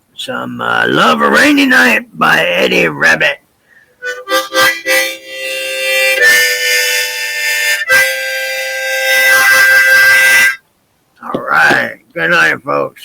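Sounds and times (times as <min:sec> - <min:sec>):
harmonica playing held chords: 0:04.0 - 0:10.6.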